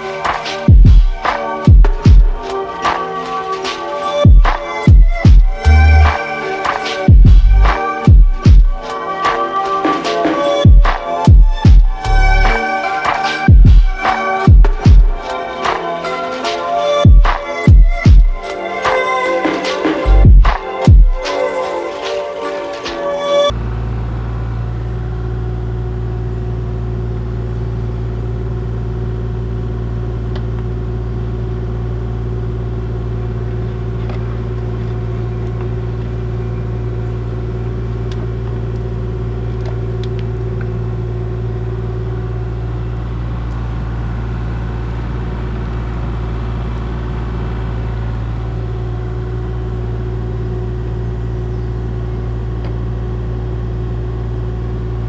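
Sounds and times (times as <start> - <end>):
heavy engine droning: 23.5 - 55.0.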